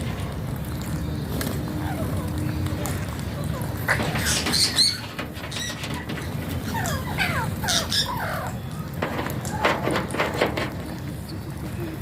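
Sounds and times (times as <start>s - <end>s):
parakeet squawking: 3.9s - 8.6s
parakeet chirping: 4.2s - 8.6s.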